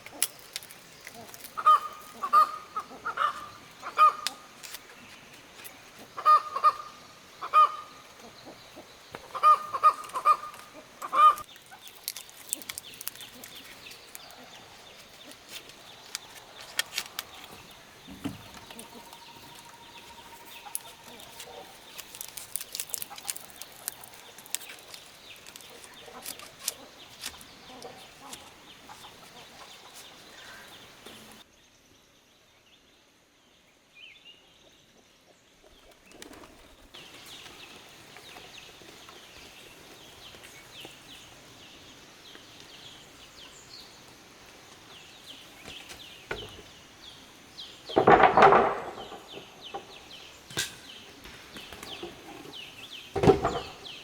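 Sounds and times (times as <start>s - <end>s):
chickens: 1.2s - 4.5s, 6.0s - 11.9s, 14.3s - 22.0s
handwork clicks and rustles: 11.4s - 14.2s.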